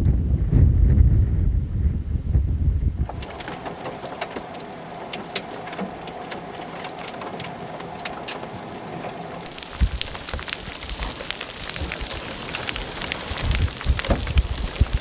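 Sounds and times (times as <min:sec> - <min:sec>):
wind buffeting microphone: 0:00.0 - 0:04.0, 0:09.4 - 0:15.0
raindrops ticking on a surface: 0:03.0 - 0:15.0.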